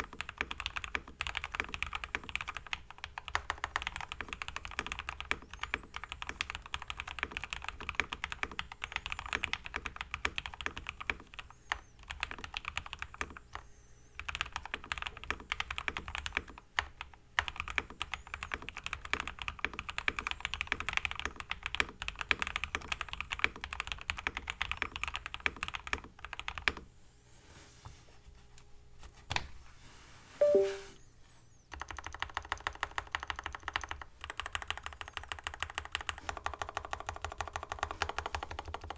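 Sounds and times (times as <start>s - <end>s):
mechanical keyboard typing: 0.0s - 26.8s, 31.7s - 38.9s
two-note blip: 30.4s - 31.0s.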